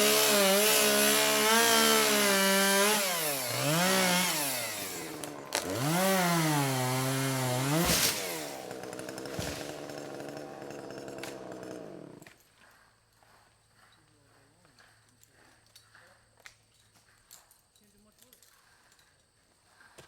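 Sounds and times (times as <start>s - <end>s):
chainsaw revving: 0.0s - 12.3s
sharp crack: 4.4s - 11.5s.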